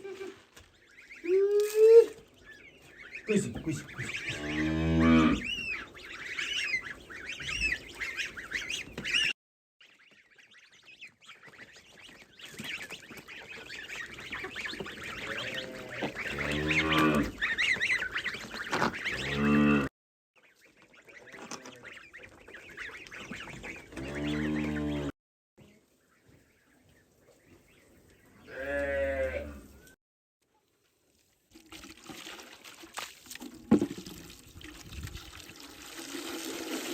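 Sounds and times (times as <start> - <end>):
geese honking: 2.8 - 9.3, 12.6 - 19.9, 20.5 - 25.1
cow mooing: 4.3 - 5.5, 15.3 - 17.3, 19.2 - 19.9, 28.5 - 29.7.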